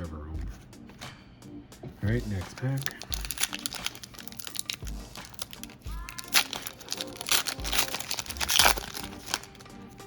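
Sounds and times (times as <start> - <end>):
foil pack tearing and crinkling: 2.6 - 10.0.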